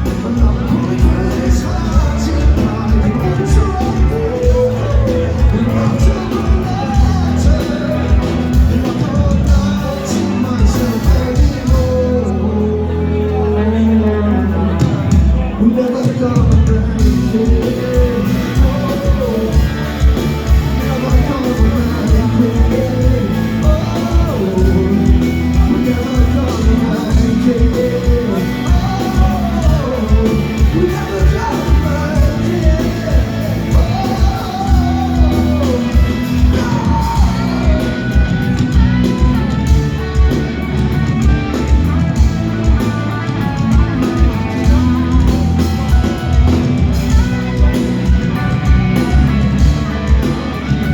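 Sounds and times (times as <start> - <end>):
drums steady beat: 0.0 - 12.4, 14.8 - 50.9
live rock band: 0.0 - 50.9
person singing: 0.0 - 50.9.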